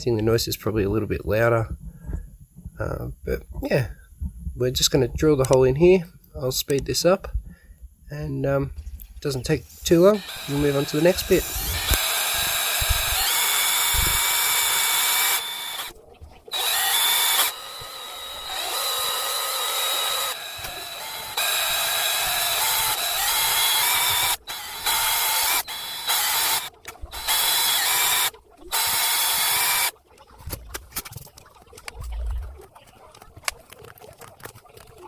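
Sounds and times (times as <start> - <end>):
small electric drill whining: 10.0 - 15.9, 16.5 - 29.9.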